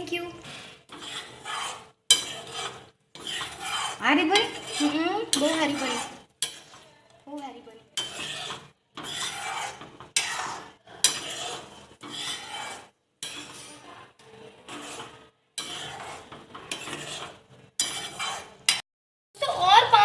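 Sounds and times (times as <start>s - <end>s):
spoon stirring and scraping pot: 0.0s - 18.8s
liquid simmering: 7.8s - 18.7s.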